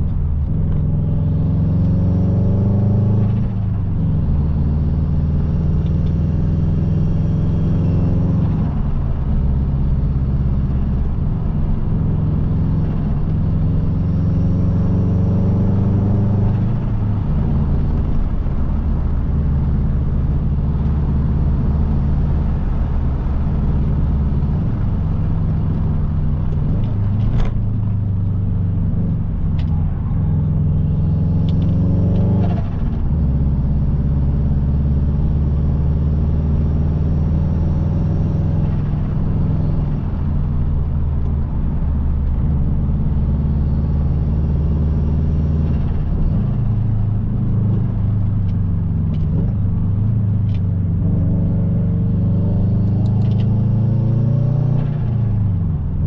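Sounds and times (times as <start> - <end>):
car engine revving hard: 51.0 - 55.4.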